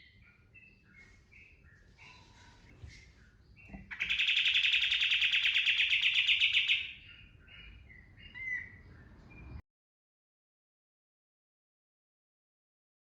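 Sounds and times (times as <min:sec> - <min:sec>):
bird singing fast trills: 0:03.2 - 0:09.6.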